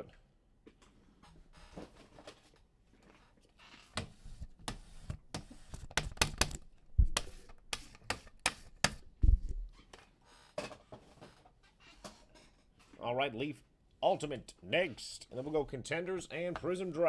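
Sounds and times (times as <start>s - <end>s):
cards clicking and tapping: 4.7s - 9.0s
dull thumps: 8.5s - 9.7s.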